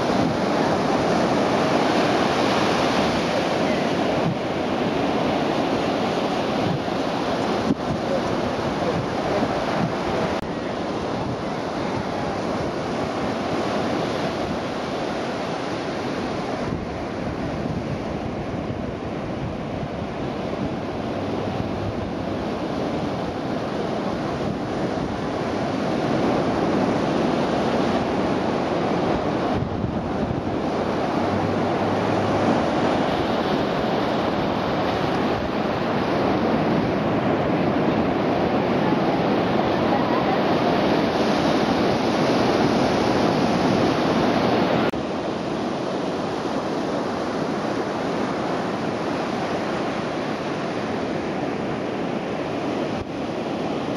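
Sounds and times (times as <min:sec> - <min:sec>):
surf breaking on a beach: 0:00.0 - 0:53.9
wind buffeting the microphone: 0:00.0 - 0:53.9.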